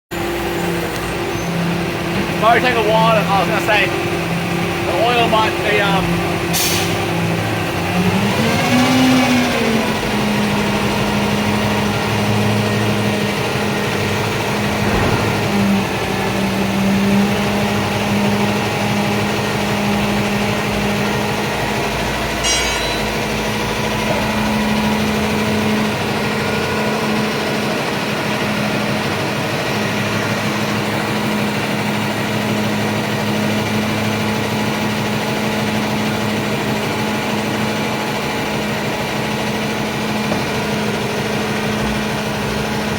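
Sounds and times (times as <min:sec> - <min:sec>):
vehicle engine fast idle: 0:00.2 - 0:22.5
metallic clatter: 0:14.7 - 0:17.3.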